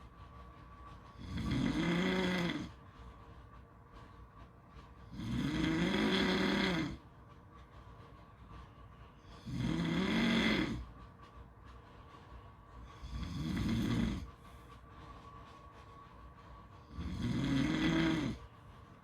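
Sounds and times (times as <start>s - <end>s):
pitched snoring drone: 1.2s - 2.7s, 5.1s - 7.0s, 9.4s - 10.8s, 13.0s - 14.3s, 16.9s - 18.4s.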